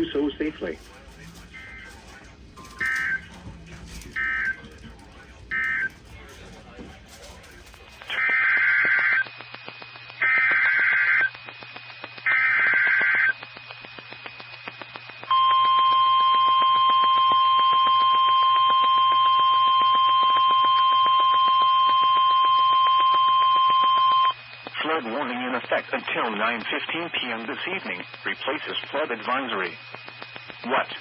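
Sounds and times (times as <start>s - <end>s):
steady alarm tone: 0.0s - 9.2s.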